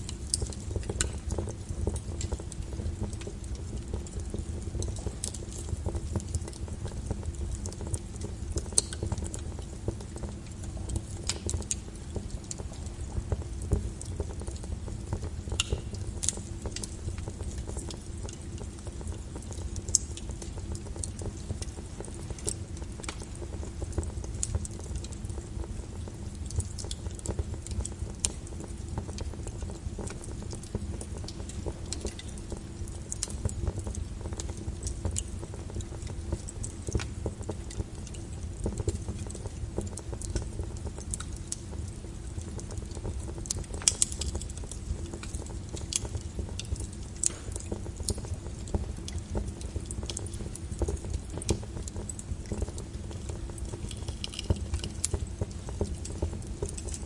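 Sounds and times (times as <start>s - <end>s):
fire crackling and popping: 0.0s - 57.0s.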